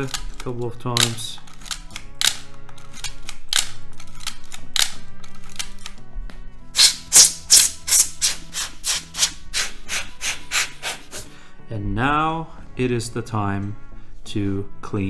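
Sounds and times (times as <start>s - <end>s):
faint background music: 0.0s - 15.0s
short hissy strokes: 6.8s - 11.4s.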